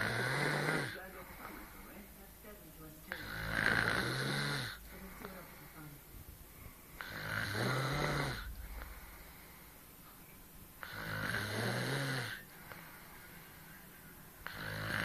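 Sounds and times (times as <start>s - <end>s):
woman snoring: 0.0s - 1.8s, 3.1s - 6.0s, 7.0s - 9.2s, 10.8s - 12.5s, 14.4s - 15.0s.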